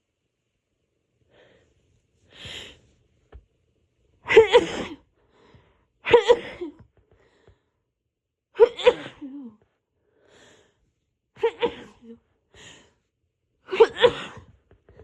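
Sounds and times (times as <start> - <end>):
woman sneezing: 4.3 - 5.0, 6.0 - 6.8, 8.6 - 9.6, 11.4 - 12.1, 13.7 - 14.5.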